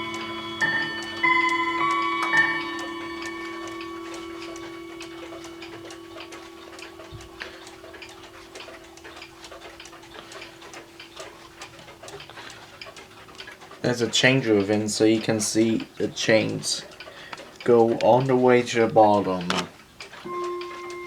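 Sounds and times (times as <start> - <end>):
low ringing tone: 0.0 - 12.1, 20.3 - 21.0
cuckoo clock ticking: 0.0 - 21.0.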